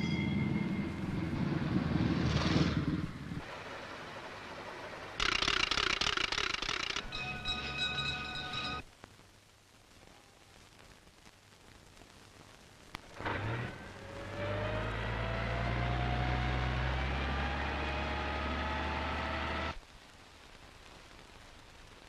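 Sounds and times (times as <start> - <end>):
vehicle engine pulling away: 0.7 - 5.7, 13.2 - 19.8
sharp click: 5.2 - 7.1.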